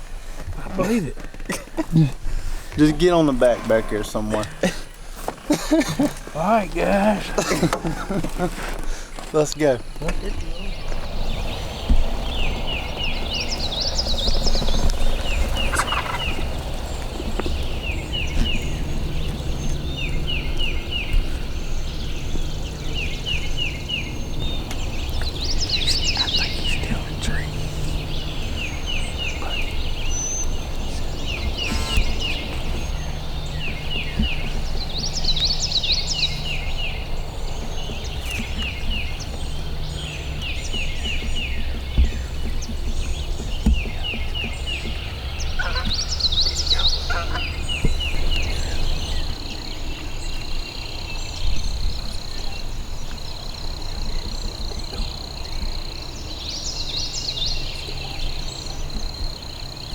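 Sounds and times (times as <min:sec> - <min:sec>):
birds calling falling notes: 0:00.0 - 0:59.9.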